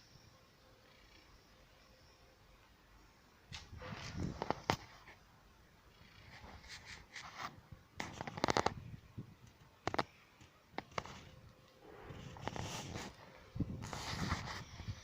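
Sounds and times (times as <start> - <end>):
rustling: 3.5 - 5.3, 6.0 - 15.0.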